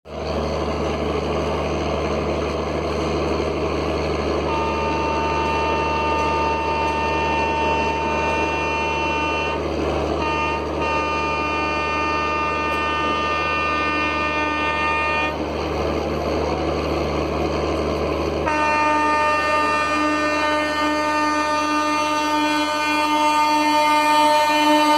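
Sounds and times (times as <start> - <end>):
locomotive horn blasts: 4.4 - 15.4, 18.4 - 24.9.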